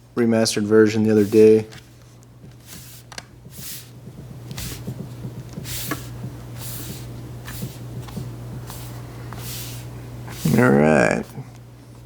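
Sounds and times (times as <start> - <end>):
low electrical hum: 0.0 - 12.0
laptop cover rustling scrapes: 1.1 - 4.9, 5.6 - 10.8.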